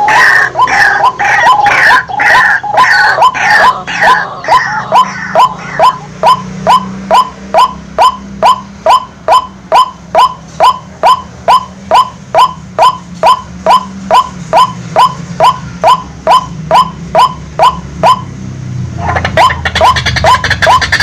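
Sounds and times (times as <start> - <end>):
bird call from a speaker: 0.0 - 8.1.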